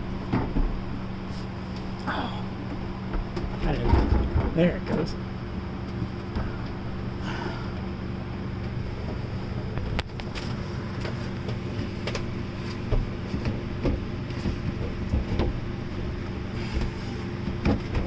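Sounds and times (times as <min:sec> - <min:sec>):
low hum: 0:00.0 - 0:18.0
cooler knocking and scraping in cabinet: 0:03.1 - 0:05.1, 0:10.2 - 0:18.0.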